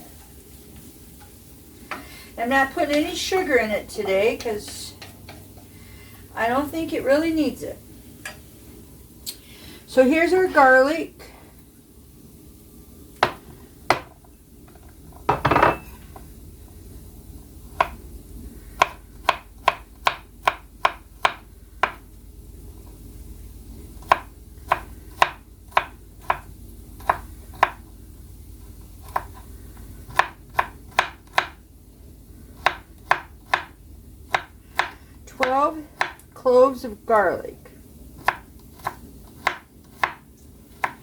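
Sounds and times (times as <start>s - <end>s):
knife chopping on cutting board: 13.2s - 14.2s, 17.7s - 18.0s, 18.8s - 22.0s, 24.0s - 27.8s, 30.1s - 31.6s, 32.6s - 36.2s, 38.2s - 40.2s, 40.8s - 41.0s.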